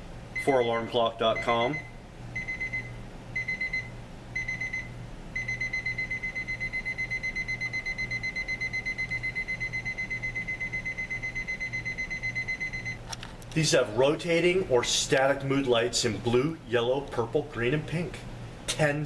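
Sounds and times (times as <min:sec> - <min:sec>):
alarm clock beeping: 0:00.4 - 0:13.0.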